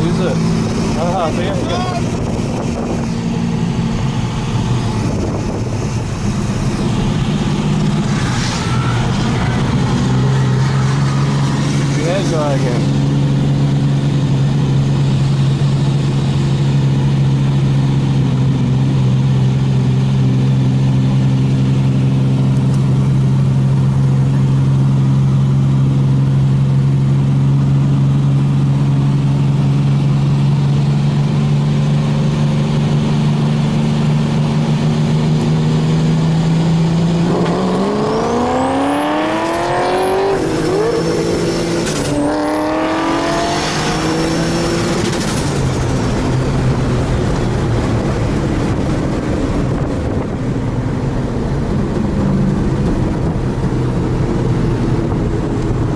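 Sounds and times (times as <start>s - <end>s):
car engine accelerating: 0.0s - 55.9s.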